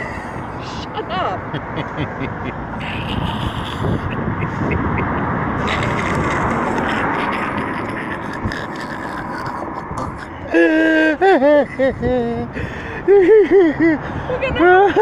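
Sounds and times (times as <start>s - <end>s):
steady rushing noise: 0.0s - 10.2s.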